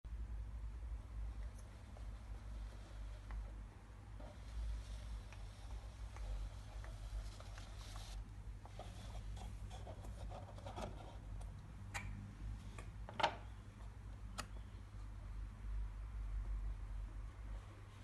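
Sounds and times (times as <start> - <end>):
steady low hum: 0.1 - 18.0
clicks: 14.2 - 14.7.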